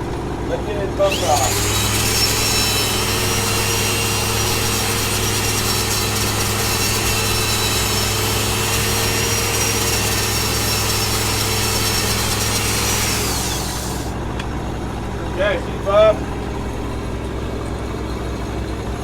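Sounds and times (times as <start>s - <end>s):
angle grinder grinding: 0.9s - 14.4s.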